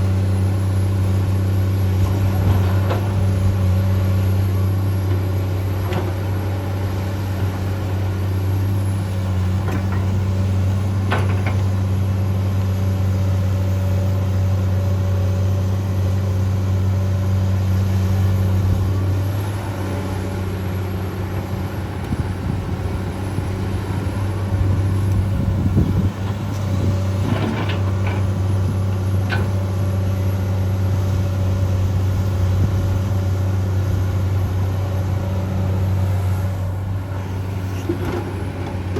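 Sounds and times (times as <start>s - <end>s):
excavator diesel engine running: 0.0s - 38.9s
excavator clanks: 1.8s - 4.0s, 4.8s - 12.1s, 18.7s - 30.5s, 36.8s - 38.9s.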